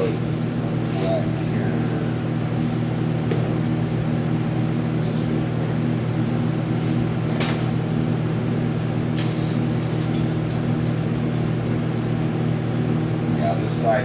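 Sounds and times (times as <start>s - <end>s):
low machine hum: 0.0s - 14.0s.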